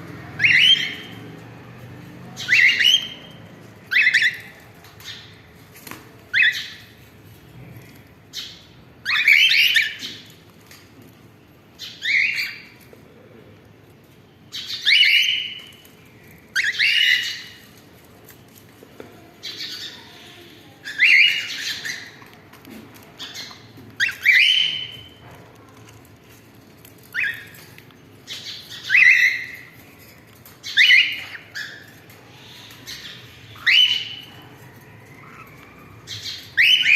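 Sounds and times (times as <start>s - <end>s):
cockatiels calling: 0.3s - 1.2s, 2.4s - 5.3s, 6.3s - 7.0s, 8.3s - 10.4s, 11.8s - 12.8s, 14.5s - 15.9s, 16.5s - 17.6s, 19.4s - 20.1s, 20.8s - 22.4s, 23.2s - 25.2s, 27.1s - 29.8s, 30.4s - 36.9s.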